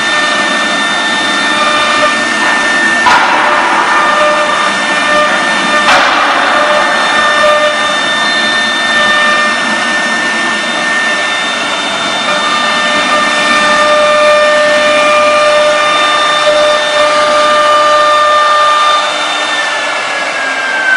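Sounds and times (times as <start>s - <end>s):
router spindle whining: 0.0s - 20.9s
whistling tones: 6.6s - 10.2s.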